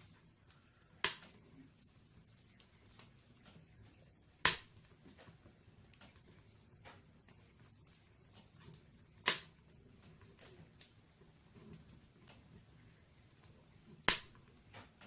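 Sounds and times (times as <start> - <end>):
wood fire crackling: 0.0 - 15.0
loud sharp pop of fire: 4.4 - 4.8, 9.2 - 9.6, 14.0 - 14.4.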